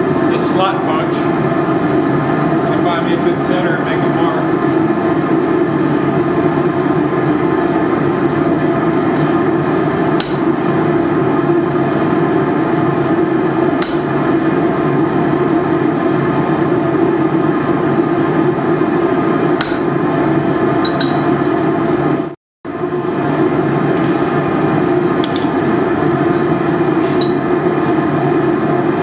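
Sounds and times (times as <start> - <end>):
forge running: 0.0 - 22.1, 22.7 - 29.0.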